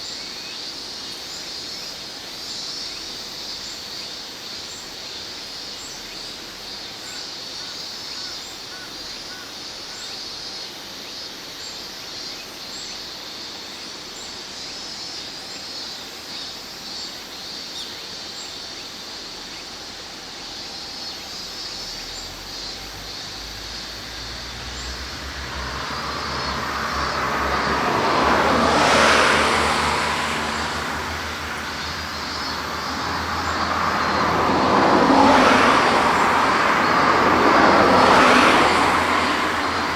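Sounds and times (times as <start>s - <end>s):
insects chirring: 15.8s - 39.9s
vehicle passing by: 21.0s - 39.9s.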